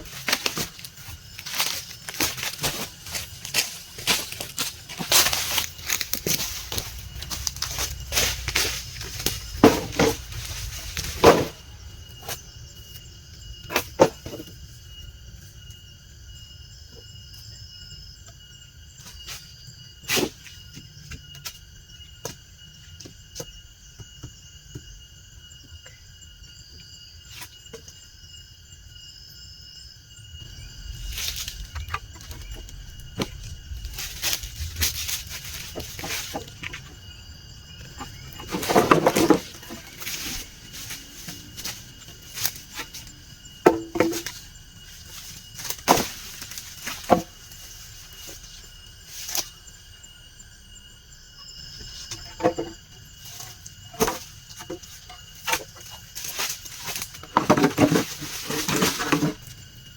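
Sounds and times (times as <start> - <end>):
forest insects droning: 0.0 - 59.9
wood knocking and clattering: 9.2 - 10.3, 11.0 - 11.6, 37.9 - 40.2, 43.6 - 44.4.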